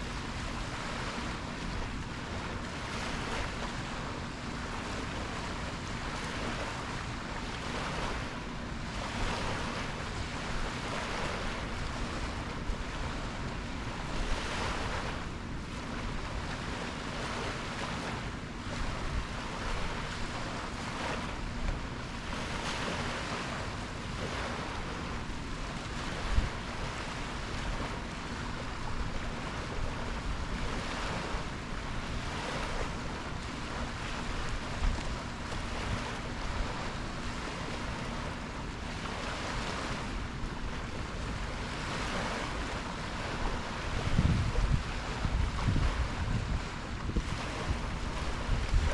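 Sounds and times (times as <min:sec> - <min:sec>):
ocean waves washing in: 0:00.0 - 0:48.9
wind buffeting microphone: 0:39.3 - 0:48.9.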